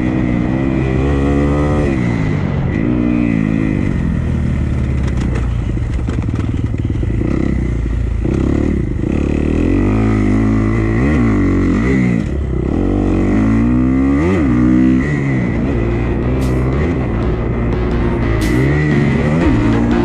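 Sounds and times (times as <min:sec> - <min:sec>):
dirt bike engine revving: 0:07.2 - 0:20.0.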